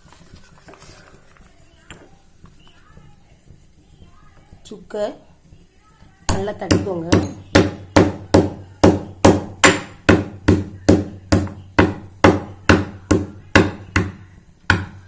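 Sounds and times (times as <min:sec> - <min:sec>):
ginger being pounded: 0:06.3 - 0:15.0.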